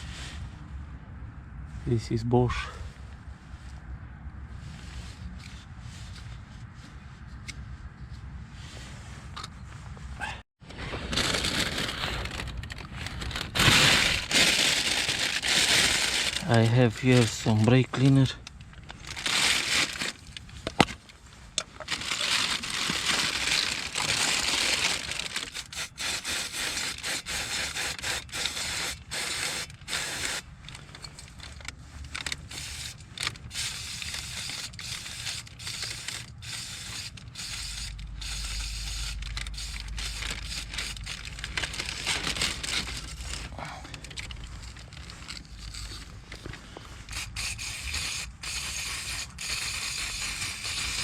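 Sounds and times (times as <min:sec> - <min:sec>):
clicks and scrapes of parts: 0:09.2 - 0:10.0, 0:12.2 - 0:51.0.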